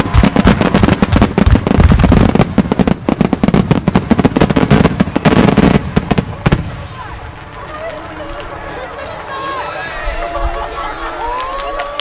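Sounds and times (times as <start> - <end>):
aerial fireworks bangs and crackling: 0.0 - 9.2.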